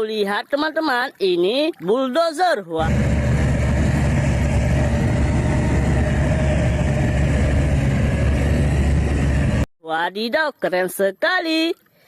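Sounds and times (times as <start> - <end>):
heavy engine deep hum: 2.8 - 9.7.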